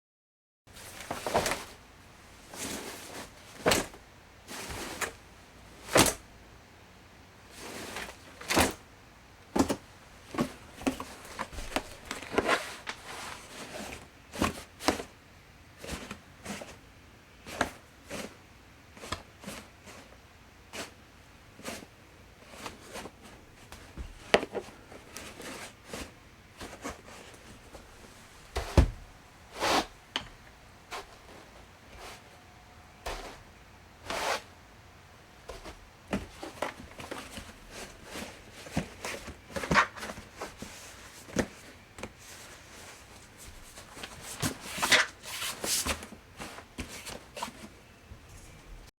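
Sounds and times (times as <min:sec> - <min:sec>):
laundry basket knocking and bumping: 0:22.9 - 0:31.4, 0:35.5 - 0:40.6.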